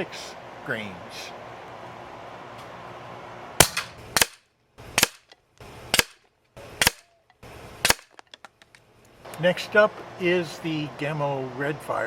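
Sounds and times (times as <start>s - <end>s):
air rifle shots: 3.6s - 5.3s, 5.9s - 6.2s, 6.8s - 7.1s, 7.8s - 8.2s.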